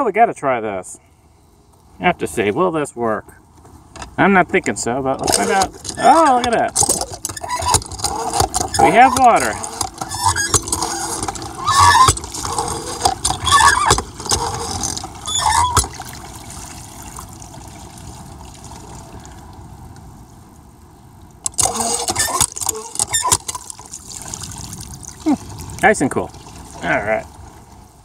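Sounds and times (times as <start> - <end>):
hand water pump squeaking: 5.1 - 16.4, 21.4 - 24.2
pump clatter: 5.1 - 19.4, 21.4 - 27.7
gush of water: 10.9 - 19.9, 21.8 - 28.0.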